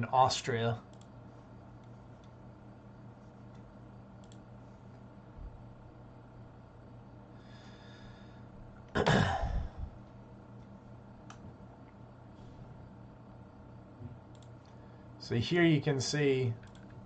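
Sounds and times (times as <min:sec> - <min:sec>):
low electrical hum: 0:00.0 - 0:17.0
mouse click: 0:03.5 - 0:04.4.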